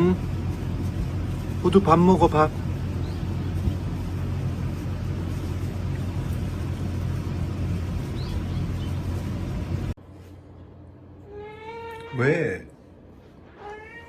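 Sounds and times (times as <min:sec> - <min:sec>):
low hum: 0:00.0 - 0:11.8
rumbling background noise: 0:00.0 - 0:14.0
cat meowing: 0:11.2 - 0:12.2, 0:13.5 - 0:14.0.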